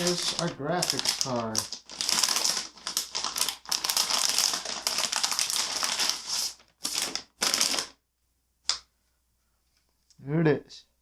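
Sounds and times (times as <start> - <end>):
packaging crinkling and rustling: 0.0 - 8.0.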